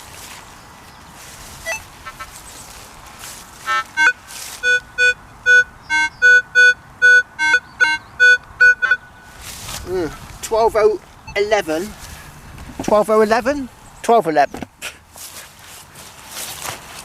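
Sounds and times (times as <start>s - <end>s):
metal detector beeps: 1.6s - 1.9s, 3.7s - 9.4s.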